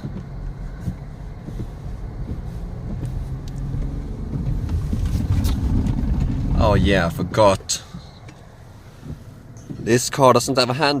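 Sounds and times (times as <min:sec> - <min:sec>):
car engine pulling away: 0:00.0 - 0:10.1.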